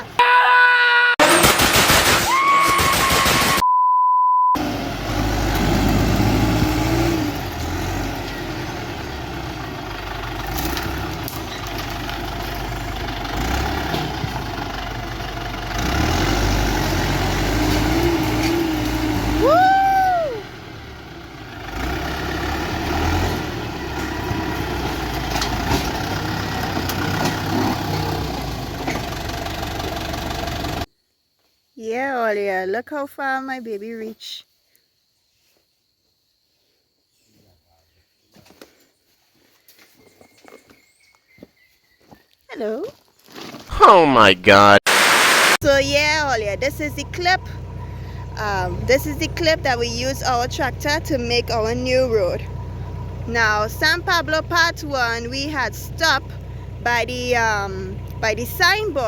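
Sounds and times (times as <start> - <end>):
steady beep: 3.6 - 4.6
tractor engine running: 4.6 - 30.9, 43.7 - 59.0.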